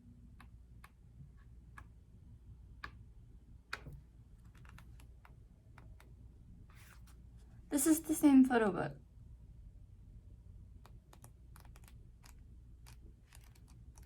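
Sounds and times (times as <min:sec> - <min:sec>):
book pages clicking and tapping: 0:03.8 - 0:06.1, 0:10.9 - 0:14.0.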